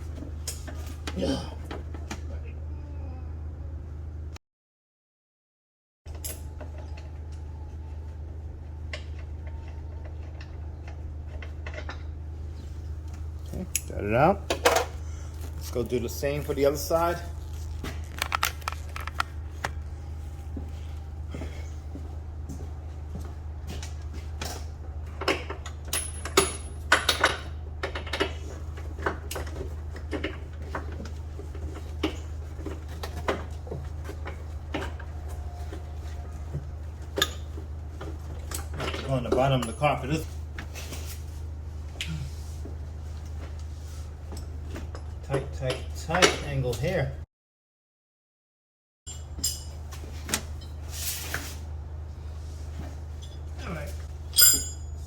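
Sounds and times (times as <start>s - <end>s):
steady low hum: 6.1s - 47.2s
hand tools clanking on car parts: 54.3s - 55.0s.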